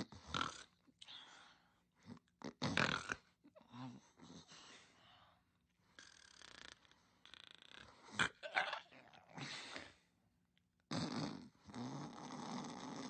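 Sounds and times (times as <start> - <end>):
person snoring: 10.9 - 13.0.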